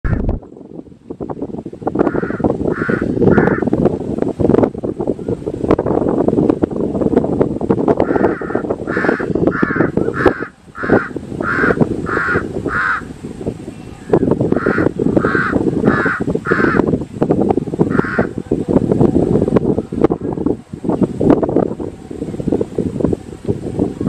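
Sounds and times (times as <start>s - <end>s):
crow cawing: 2.1s - 3.7s, 8.0s - 13.1s, 14.6s - 16.8s, 17.9s - 18.3s.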